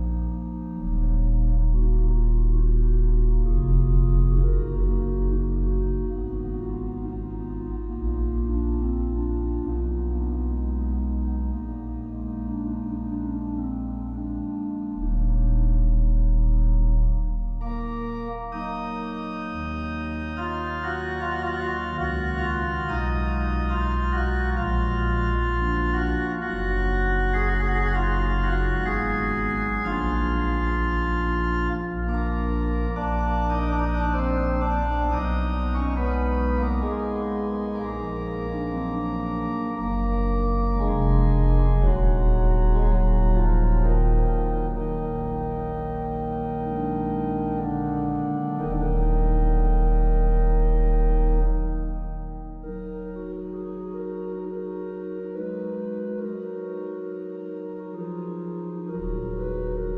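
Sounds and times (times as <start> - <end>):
slow organ music: 0.0 - 59.9.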